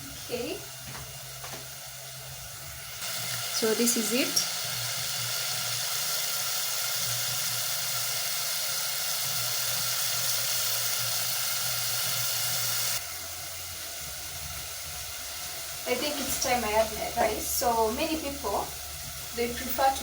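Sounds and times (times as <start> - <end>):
pot sizzling on stove: 0.0 - 20.0.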